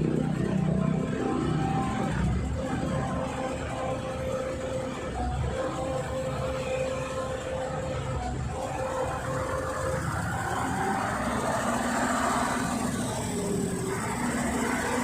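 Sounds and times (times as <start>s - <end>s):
diesel machinery rumbling: 0.0s - 15.0s.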